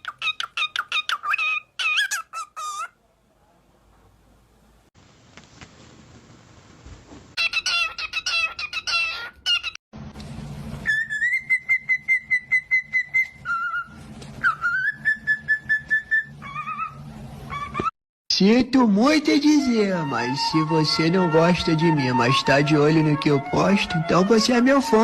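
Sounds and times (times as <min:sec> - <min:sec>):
cockatiel chirping and whistling: 0:00.0 - 0:02.9, 0:07.4 - 0:09.8, 0:10.8 - 0:17.9.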